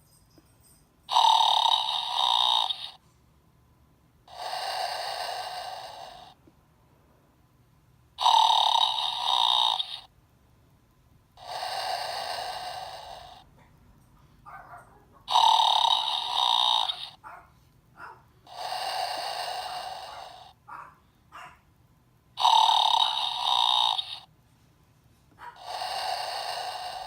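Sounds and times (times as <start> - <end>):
recorded snore through small speaker: 1.1 - 3.0, 4.2 - 6.4, 8.2 - 10.1, 11.3 - 13.6, 15.2 - 17.3, 18.0 - 20.6, 22.3 - 24.3, 25.4 - 27.0.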